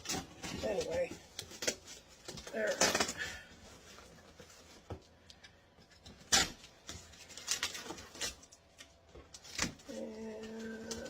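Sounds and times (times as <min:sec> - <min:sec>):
packing tape ripping: 0:06.2 - 0:08.6.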